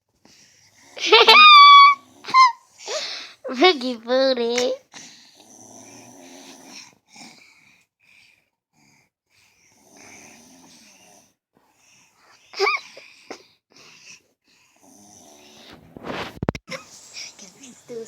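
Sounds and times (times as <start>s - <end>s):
person snoring: 5.0s - 7.7s, 9.4s - 11.4s, 14.7s - 16.3s.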